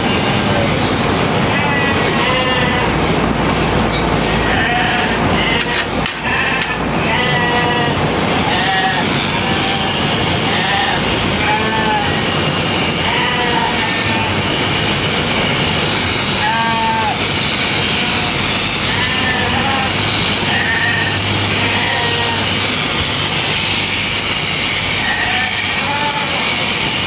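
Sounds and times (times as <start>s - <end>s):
constant noisy din: 0.0s - 27.0s
sheep bleating: 1.5s - 3.0s, 4.4s - 15.1s, 16.3s - 23.2s, 24.6s - 27.0s.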